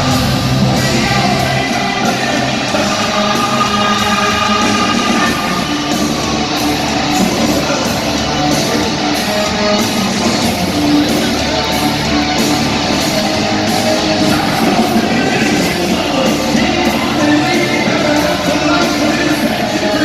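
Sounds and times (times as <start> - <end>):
distorted electric guitars: 0.0 - 20.0
live hard rock band: 0.0 - 20.0
person singing: 0.0 - 20.0.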